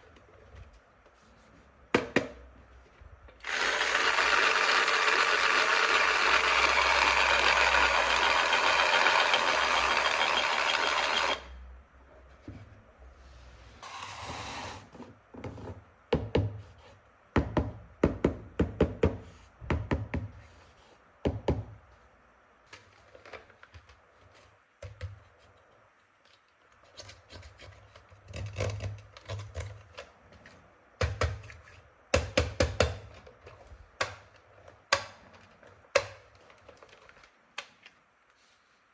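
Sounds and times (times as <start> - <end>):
plastic toy tools rattling: 3.4 - 11.4
toy power tool whirring: 3.4 - 11.5.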